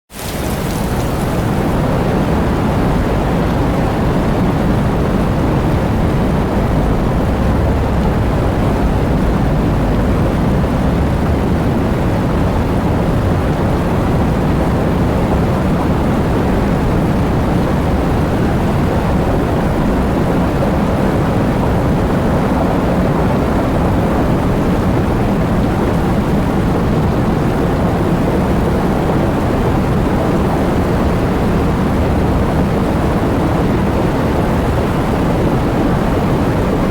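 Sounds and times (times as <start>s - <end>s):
heavy rain falling: 0.1s - 26.4s.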